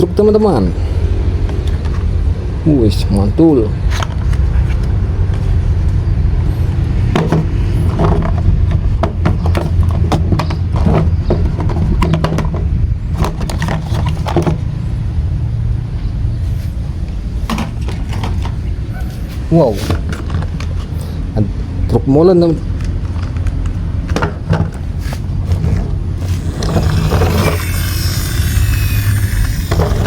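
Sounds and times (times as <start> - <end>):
steady low rumble: 0.0 - 10.1
plastic toy cars handled: 22.8 - 30.0.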